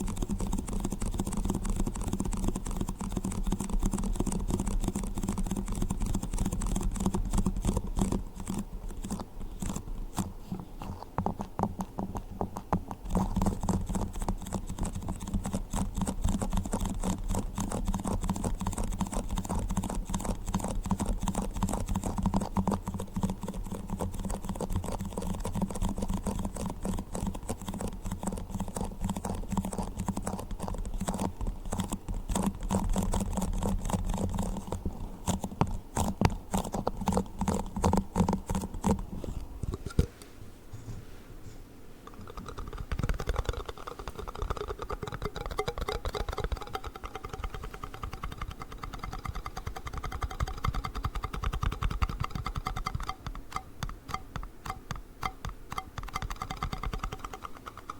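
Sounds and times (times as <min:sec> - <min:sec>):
yogurt cups being tapped: 0:42.1 - 0:57.9.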